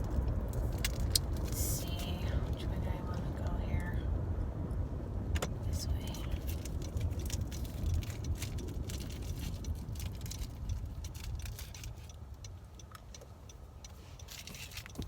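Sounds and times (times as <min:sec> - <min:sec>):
car driving rumble: 0:00.0 - 0:15.0
turn signal ticking: 0:04.7 - 0:15.0.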